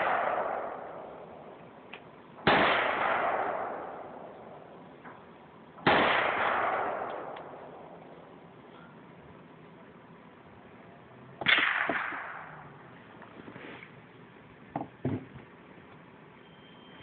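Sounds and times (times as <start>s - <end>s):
rifle shot: 0.0s - 1.5s, 2.4s - 5.2s, 5.8s - 8.0s, 11.4s - 12.7s.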